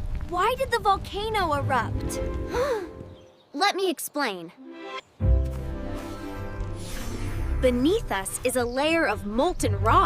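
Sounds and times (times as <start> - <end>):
background music with low tones: 4.6 - 10.0.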